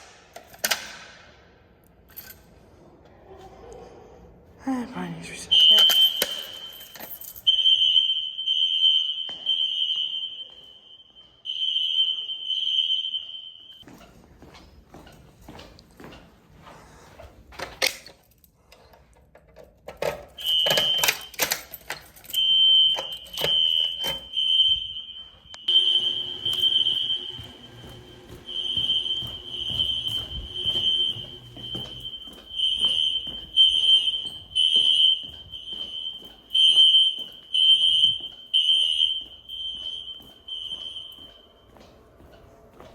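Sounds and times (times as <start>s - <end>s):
fire alarm horn pulsing: 4.8s - 13.8s, 20.3s - 42.4s.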